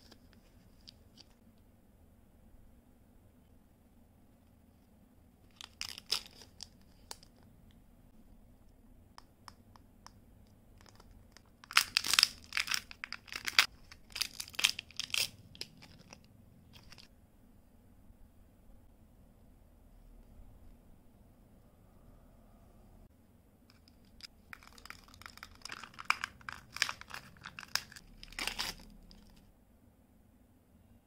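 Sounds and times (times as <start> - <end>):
candy wrappers crinkling: 5.5 - 7.4, 10.8 - 17.1, 23.7 - 29.4.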